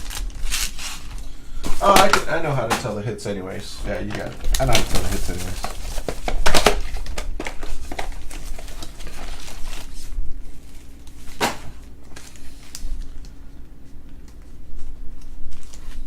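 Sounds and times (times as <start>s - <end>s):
card pack wrapper rustling: 0.0s - 2.3s, 4.0s - 13.4s.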